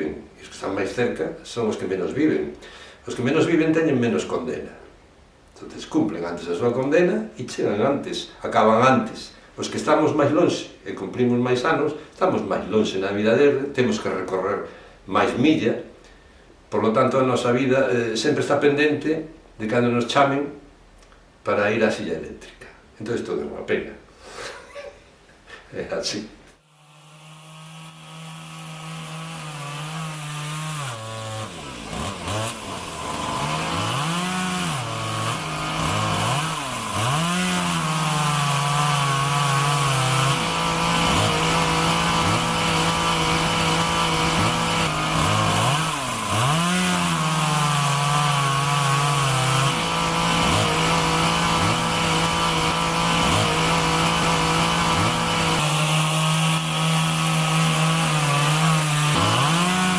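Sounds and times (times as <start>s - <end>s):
chainsaw cutting wood: 26.6s - 59.9s.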